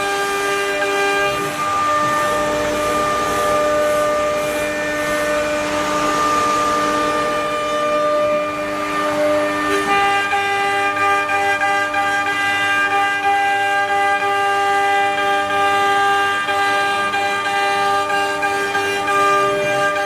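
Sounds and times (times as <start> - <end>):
cnc router motor whine: 0.0 - 20.0
cutting hiss: 0.9 - 9.6.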